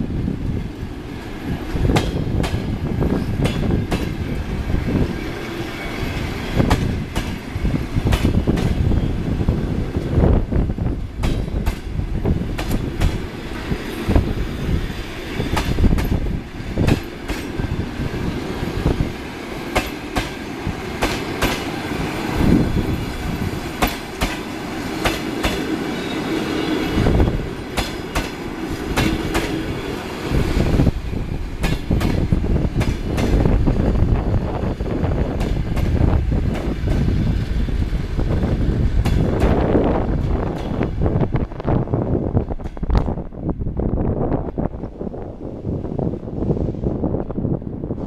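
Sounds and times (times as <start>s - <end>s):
low train rumble: 0.0s - 48.0s
train wheels clicking over rail joints: 1.2s - 9.0s, 11.0s - 21.9s, 22.8s - 25.8s, 26.8s - 29.8s, 30.5s - 33.8s, 34.7s - 37.5s, 38.8s - 41.0s, 42.4s - 43.3s.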